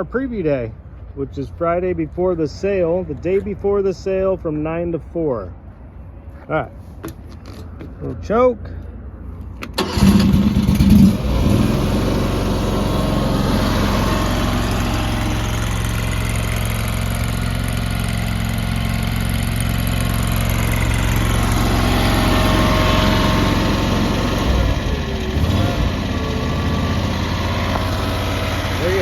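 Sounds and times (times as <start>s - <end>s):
gas engine starting and running: 9.6s - 29.0s.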